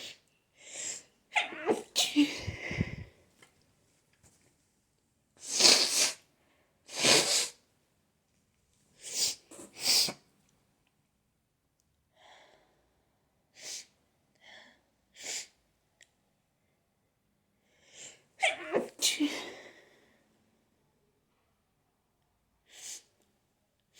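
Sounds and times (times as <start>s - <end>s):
person sneezing: 1.3s - 3.1s, 5.4s - 6.2s, 6.9s - 7.6s, 18.4s - 19.6s.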